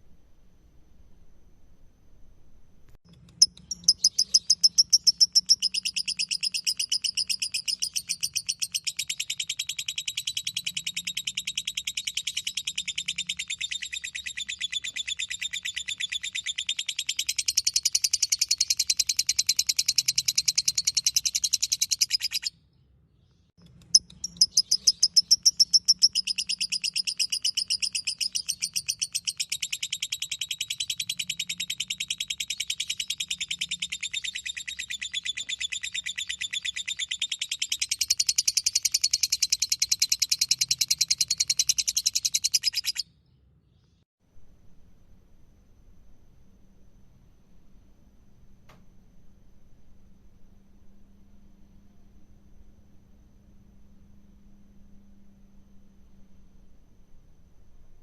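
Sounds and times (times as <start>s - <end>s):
lovebird chattering trill: 3.2s - 22.5s, 23.7s - 43.0s.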